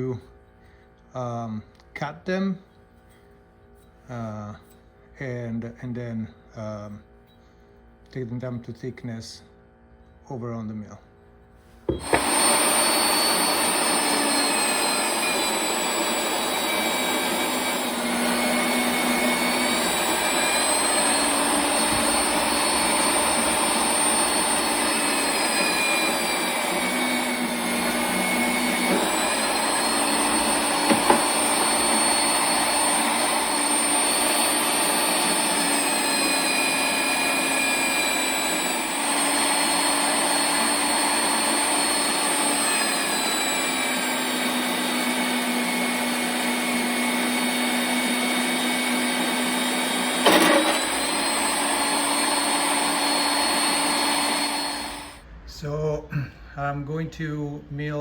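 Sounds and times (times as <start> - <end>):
power tool cutting steel: 11.9 - 55.2.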